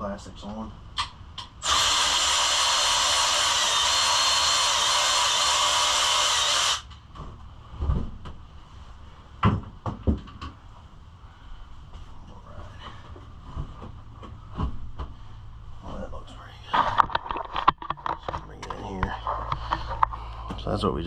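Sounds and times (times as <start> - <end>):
power tool running: 1.6 - 6.9.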